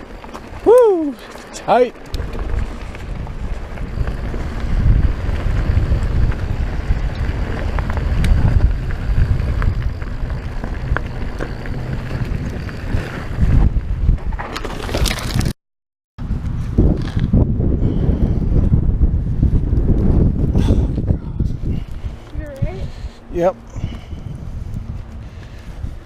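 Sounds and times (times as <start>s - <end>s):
bike clicks and rattles: 0.0s - 15.5s, 16.4s - 17.5s
wind buffeting microphone: 0.0s - 15.5s, 16.2s - 26.0s.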